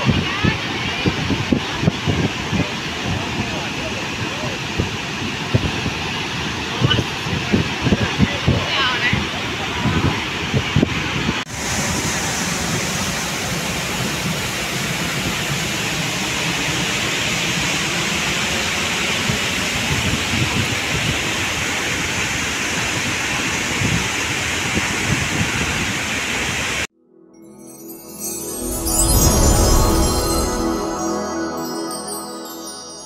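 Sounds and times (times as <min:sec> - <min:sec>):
waterfall rushing: 0:11.5 - 0:15.8.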